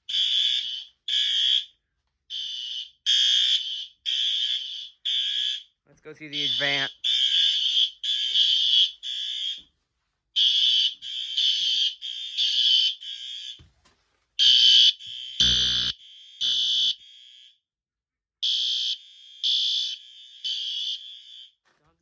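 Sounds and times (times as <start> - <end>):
fire alarm horn blasts: 2.3 - 9.6, 10.4 - 13.6, 14.4 - 17.5, 18.4 - 21.6.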